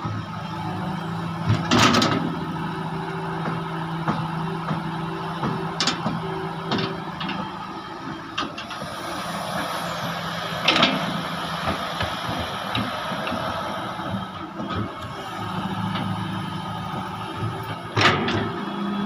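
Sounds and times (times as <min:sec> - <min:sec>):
excavator diesel engine running: 0:00.0 - 0:19.0
sharp knocks of machine working: 0:18.0 - 0:18.6.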